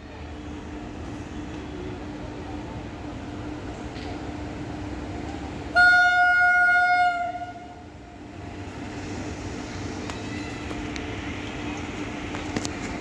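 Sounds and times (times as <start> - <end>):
train rumbling: 0.0 - 13.0
train horn blast: 5.7 - 7.9.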